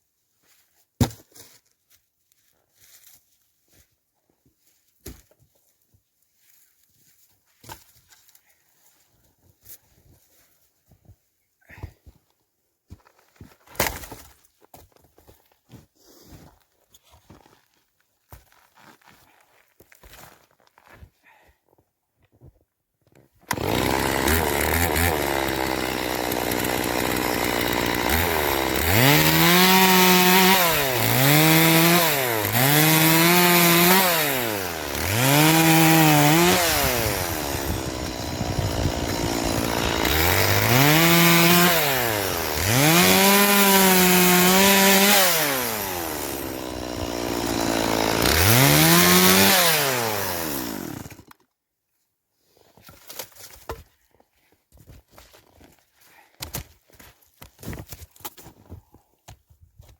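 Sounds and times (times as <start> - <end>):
chainsaw cutting wood: 23.4 - 51.4.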